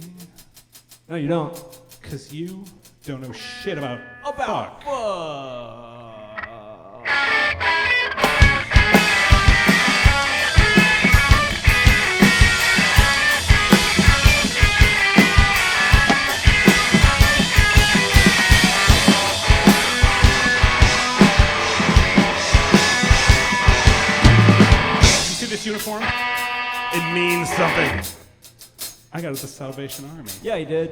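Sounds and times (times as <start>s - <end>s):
drum kit pounding: 0.0s - 3.8s, 8.2s - 30.7s
electric guitar: 6.3s - 28.2s.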